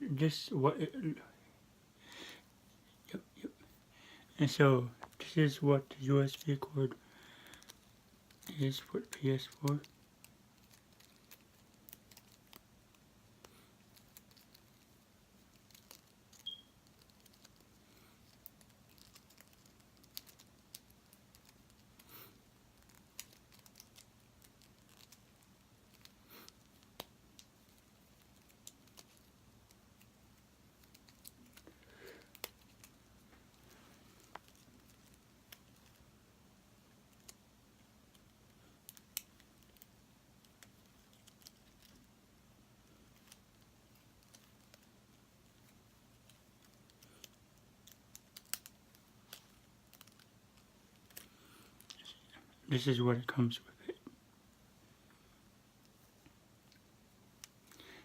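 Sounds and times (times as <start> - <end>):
cable and packaging rustling: 30.7 - 36.1.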